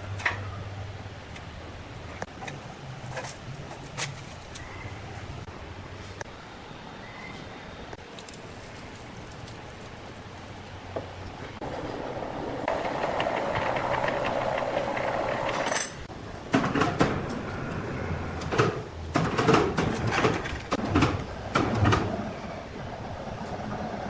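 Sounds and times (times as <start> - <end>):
sawmill machinery running: 11.6 - 15.8.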